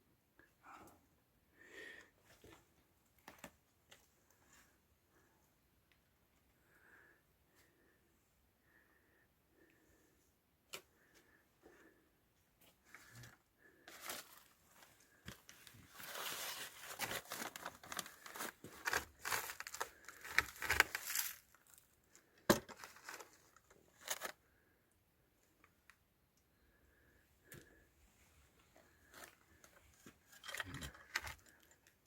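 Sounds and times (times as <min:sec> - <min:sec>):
crunching and rustling: 0:13.9 - 0:21.9.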